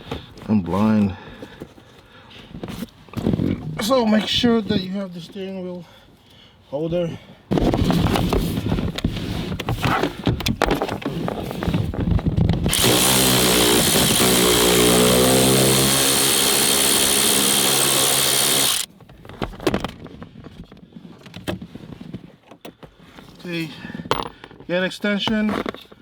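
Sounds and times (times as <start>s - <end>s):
cordless power tool spinning: 12.7s - 18.9s.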